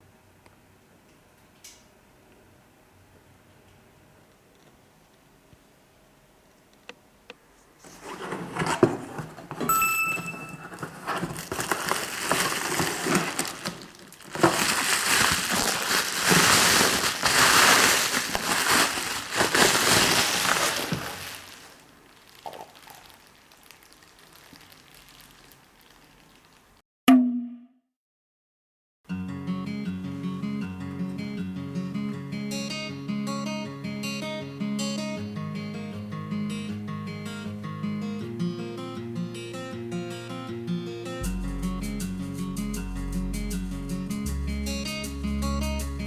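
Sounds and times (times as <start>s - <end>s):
crinkling and rustling: 7.6s - 26.8s
brief clear tone: 9.6s - 10.7s.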